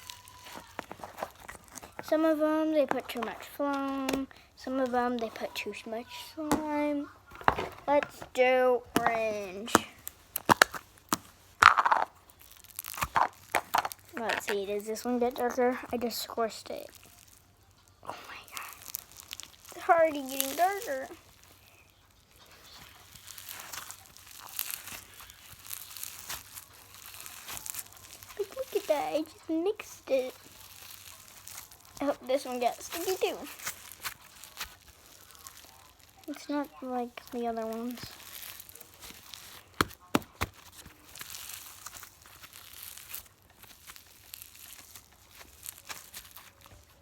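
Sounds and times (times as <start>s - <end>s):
slime squished by hand: 0.0s - 2.2s, 8.9s - 47.0s.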